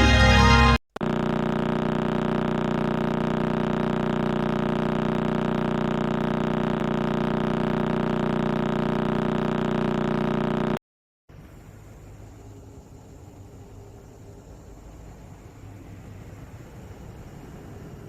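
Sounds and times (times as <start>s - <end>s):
steady electronic drone: 1.0s - 10.8s.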